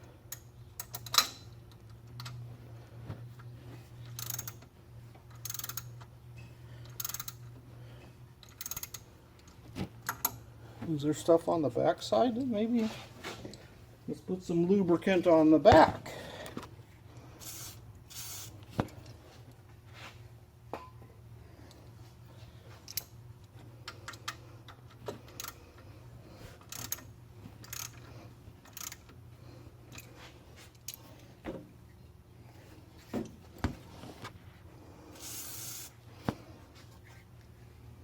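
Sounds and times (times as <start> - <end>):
low steady hum: 0.0 - 38.0
tools clicking and tapping: 0.3 - 2.4
aerosol spray hissing: 35.2 - 35.9.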